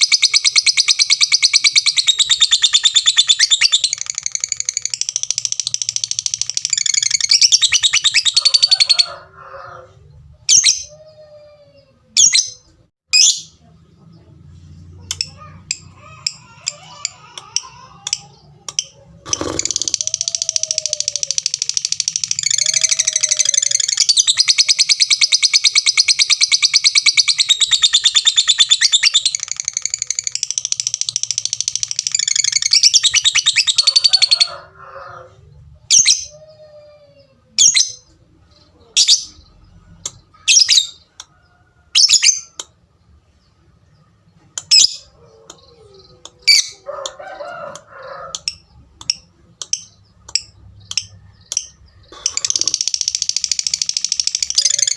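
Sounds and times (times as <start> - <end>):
lovebird chattering song: 0.0 - 9.1, 15.1 - 34.6, 47.8 - 54.9
bird sharp chirps: 48.1 - 54.9.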